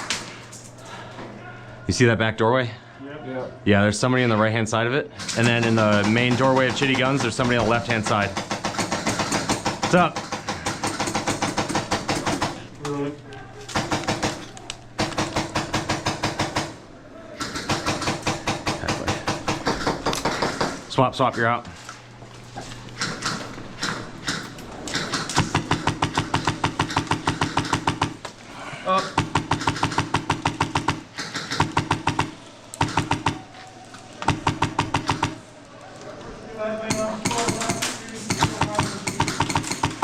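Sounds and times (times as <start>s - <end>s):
airsoft guns firing full auto: 5.2s - 12.7s, 13.7s - 16.8s, 17.4s - 20.8s, 23.0s - 28.2s, 29.0s - 33.5s, 36.9s - 40.0s.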